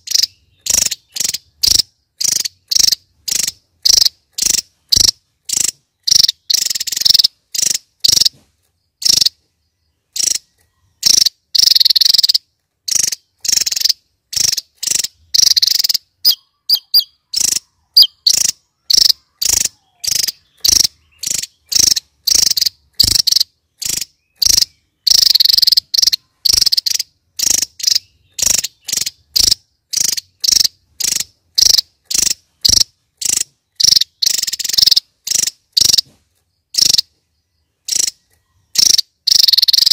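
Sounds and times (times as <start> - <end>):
bird singing high notes: 14.6 - 23.3.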